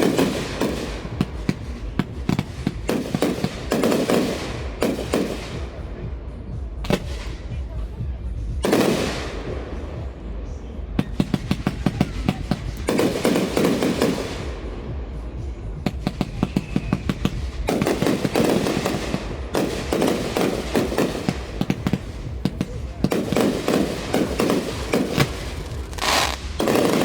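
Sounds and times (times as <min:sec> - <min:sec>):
fireworks crackling: 0:00.0 - 0:06.1, 0:08.6 - 0:10.1, 0:11.0 - 0:27.0
shells bursting with rumble: 0:00.0 - 0:07.6, 0:08.4 - 0:10.2, 0:10.9 - 0:27.0.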